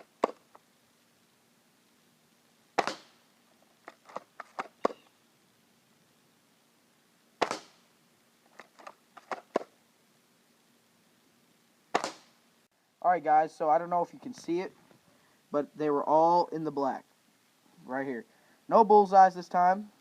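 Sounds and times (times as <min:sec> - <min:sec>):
airsoft rifle shots: 0:02.8 - 0:03.2, 0:07.4 - 0:07.8, 0:11.9 - 0:12.4.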